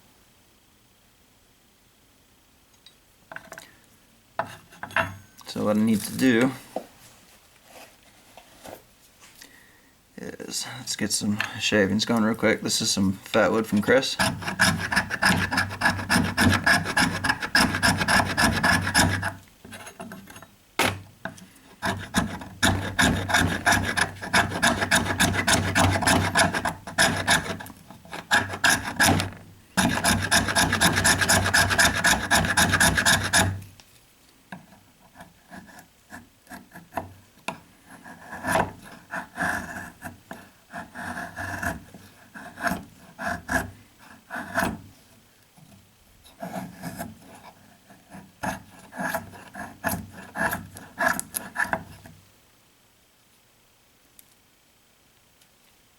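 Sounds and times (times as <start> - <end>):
knife scraping wood: 4.4 - 4.9, 13.3 - 21.0, 21.7 - 33.7, 34.6 - 37.1, 37.9 - 44.9, 45.7 - 52.2.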